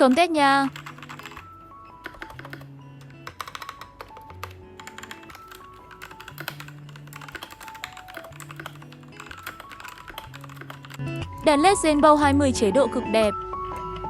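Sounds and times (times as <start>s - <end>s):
mechanical keyboard typing: 0.0s - 11.5s, 13.2s - 14.0s
background music: 0.0s - 14.0s.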